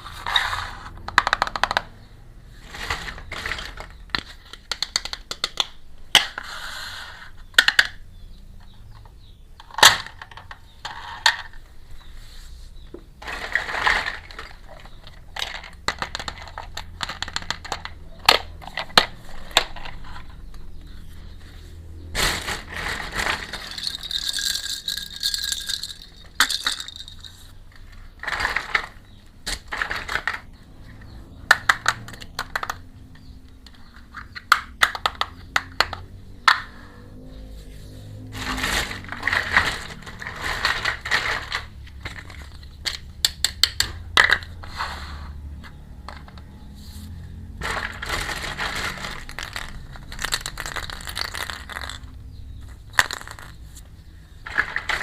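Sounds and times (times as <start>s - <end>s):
plastic toy pieces clattering: 0.1s - 2.0s, 2.6s - 6.6s, 7.5s - 8.0s, 9.6s - 11.6s, 13.2s - 20.6s, 22.1s - 36.8s, 38.2s - 44.7s, 47.3s - 55.0s
rustling: 18.7s - 30.6s, 37.4s - 42.8s, 44.6s - 55.0s.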